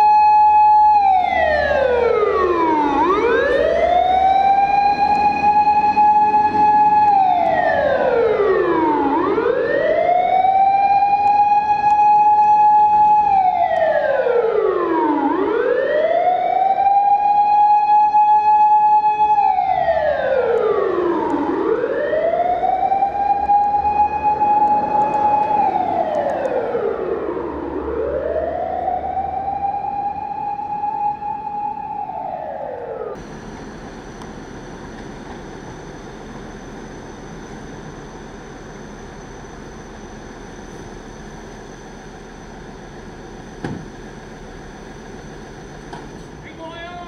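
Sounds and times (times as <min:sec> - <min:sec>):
fire engine siren wailing: 0:00.0 - 0:47.0
faint high whine: 0:33.2 - 0:47.0.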